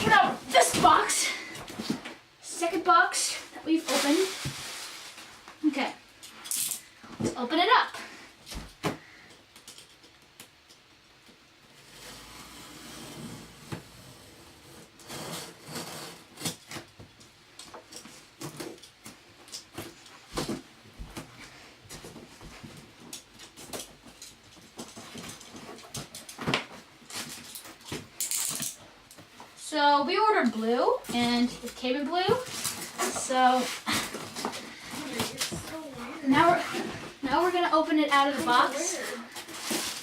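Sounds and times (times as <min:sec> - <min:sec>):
rustling: 0:03.3 - 0:07.2, 0:31.1 - 0:40.0.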